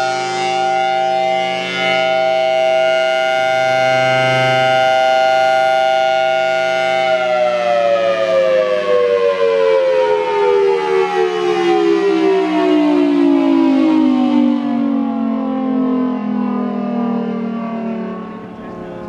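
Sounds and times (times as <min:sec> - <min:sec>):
warning siren winding down: 0:00.0 - 0:19.0.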